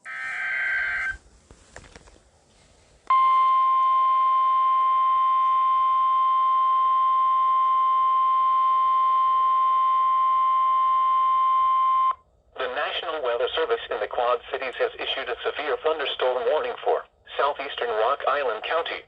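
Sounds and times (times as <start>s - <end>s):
steady alarm tone: 0.0s - 1.2s.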